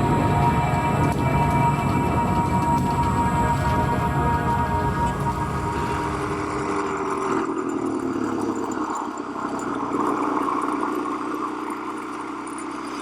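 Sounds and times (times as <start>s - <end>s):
music: 0.0s - 7.0s
vehicle engine running: 0.0s - 7.6s.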